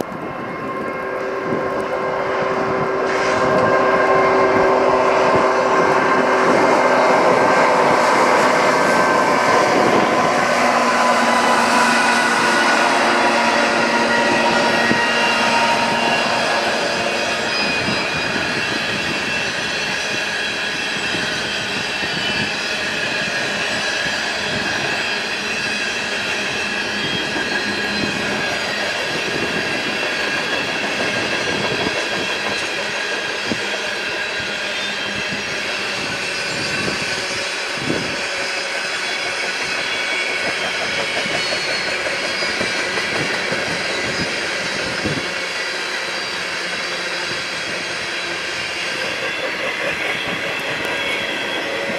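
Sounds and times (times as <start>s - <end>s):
high-pitched wheel squeal: 0.2s - 51.9s
train wheels clacking over rail joints: 26.1s - 36.1s, 38.7s - 51.9s.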